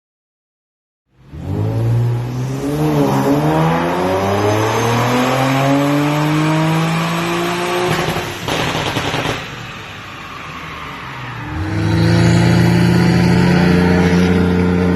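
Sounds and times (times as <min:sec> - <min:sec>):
car engine accelerating hard: 0:01.3 - 0:09.3, 0:11.5 - 0:14.9.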